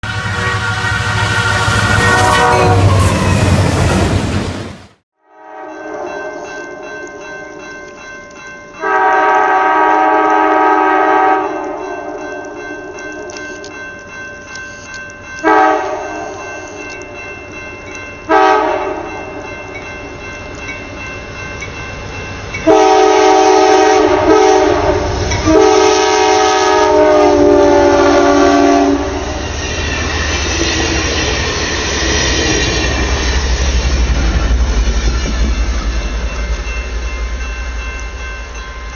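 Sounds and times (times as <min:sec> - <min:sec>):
train air horn blasts: 0:00.0 - 0:04.2, 0:05.2 - 0:06.4, 0:08.8 - 0:11.8, 0:15.4 - 0:16.4, 0:18.3 - 0:19.1, 0:22.6 - 0:29.4
low train rumble: 0:00.0 - 0:05.0, 0:15.5 - 0:38.9
train wheels clickety-clack: 0:27.4 - 0:38.2.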